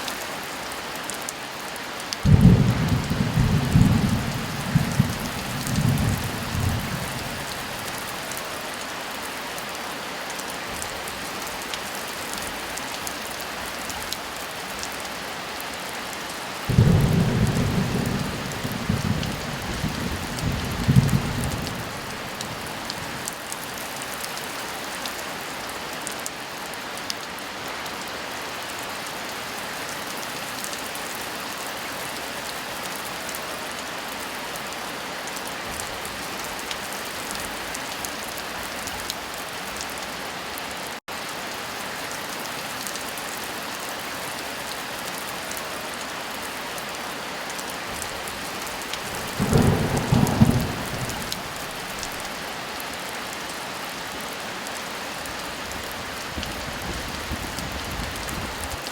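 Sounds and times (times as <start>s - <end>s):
heavy rain falling: 0.0s - 58.9s
loud thunder clap: 49.3s - 51.9s.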